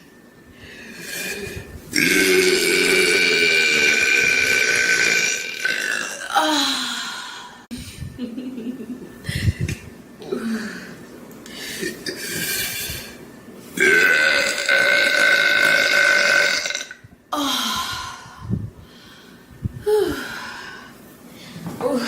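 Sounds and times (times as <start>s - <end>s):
woman breathing: 0.5s - 1.7s, 9.2s - 12.0s, 17.4s - 22.0s
woman burping: 2.0s - 6.9s, 13.8s - 17.0s.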